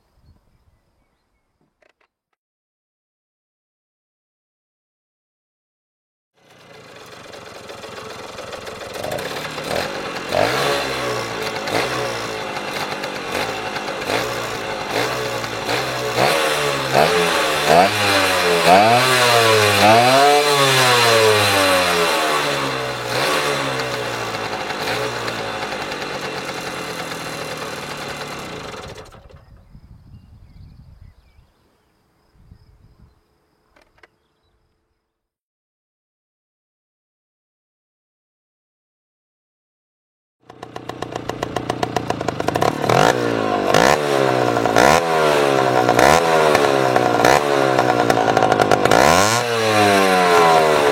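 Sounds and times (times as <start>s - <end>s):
moped engine revving: 6.4s - 29.6s, 40.4s - 50.9s.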